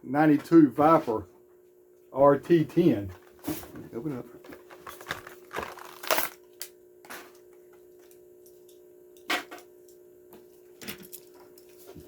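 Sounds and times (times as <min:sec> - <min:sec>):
packaging being torn open: 0:04.7 - 0:06.4.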